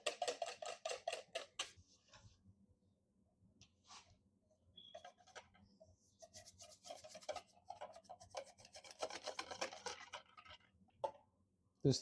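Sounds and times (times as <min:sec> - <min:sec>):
whisk scraping against bowl: 0:06.2 - 0:10.6.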